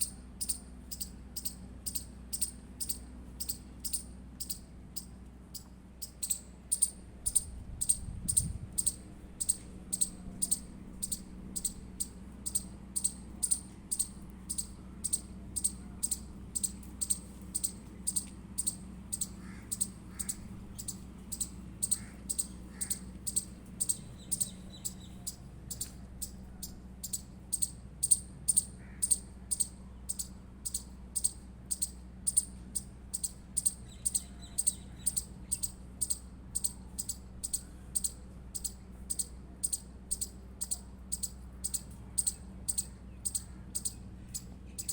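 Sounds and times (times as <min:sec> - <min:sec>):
squirrel alarm chirps: 0:00.0 - 0:44.9.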